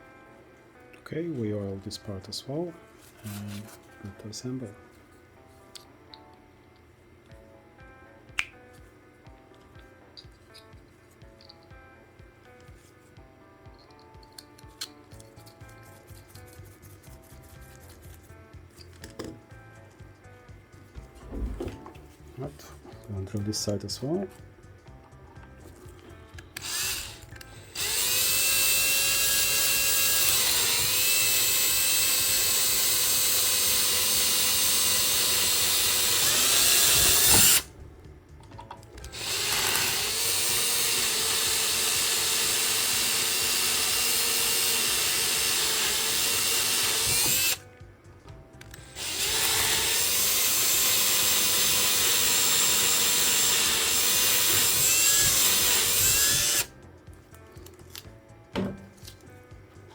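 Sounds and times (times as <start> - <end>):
small power drill whining: 26.4 - 37.7, 39.0 - 47.6, 48.6 - 56.8.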